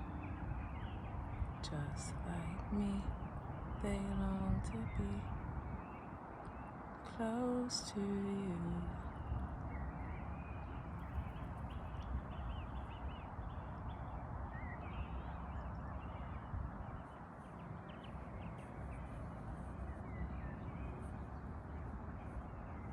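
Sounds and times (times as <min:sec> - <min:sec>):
flock of birds chirping: 0:00.0 - 0:22.9
outdoor background hiss: 0:00.0 - 0:22.9.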